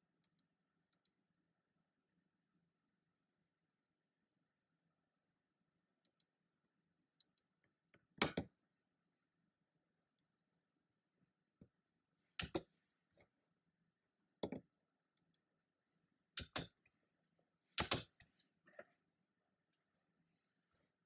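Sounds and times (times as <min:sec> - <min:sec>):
desk clicks and taps: 0:12.4 - 0:12.7, 0:14.4 - 0:14.7, 0:16.4 - 0:16.8, 0:17.8 - 0:18.3.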